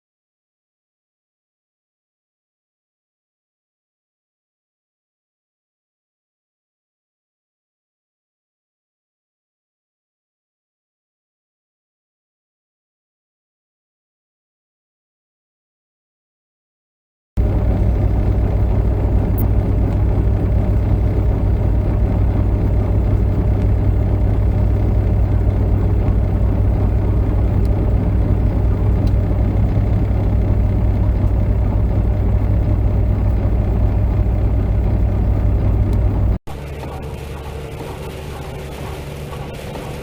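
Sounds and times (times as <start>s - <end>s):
vehicle driving on road: 17.4s - 40.0s.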